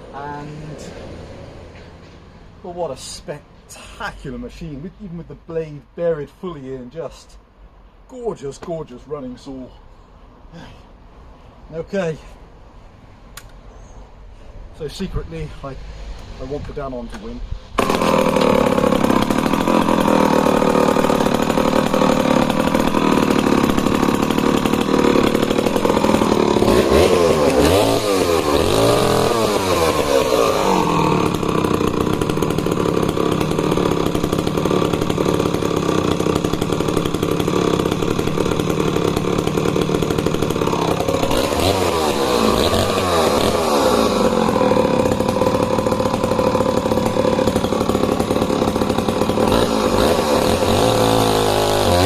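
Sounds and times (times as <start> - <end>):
chainsaw cutting under load: 17.8 - 52.0.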